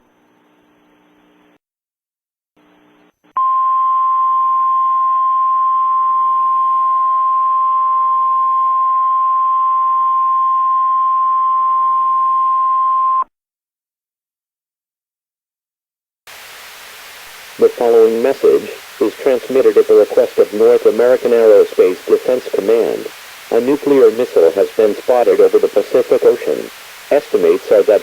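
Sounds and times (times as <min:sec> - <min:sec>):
faint hum: 0:00.0 - 0:01.6, 0:02.6 - 0:12.8, 0:16.3 - 0:28.0
static hiss: 0:00.0 - 0:01.6, 0:16.3 - 0:28.0.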